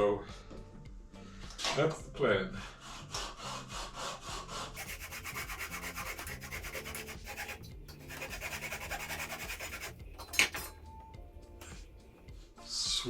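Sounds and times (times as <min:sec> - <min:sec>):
saw cutting wood: 0:02.7 - 0:10.0.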